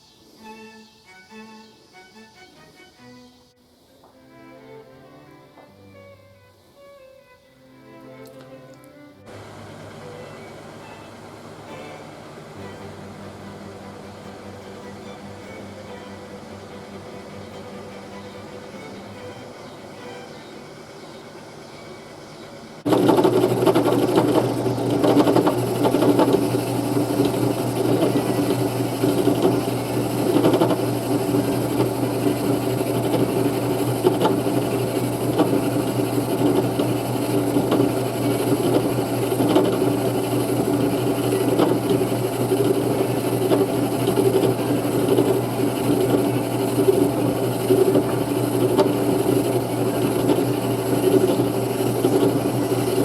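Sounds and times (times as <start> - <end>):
electric lathe motor hum: 9.2 - 53.0
tool scraping spinning wood: 22.8 - 53.0.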